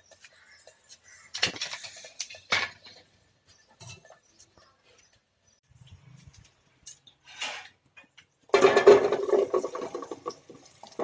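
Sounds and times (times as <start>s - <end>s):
metal pots and plates clattering: 0.1s - 3.1s, 6.9s - 11.0s.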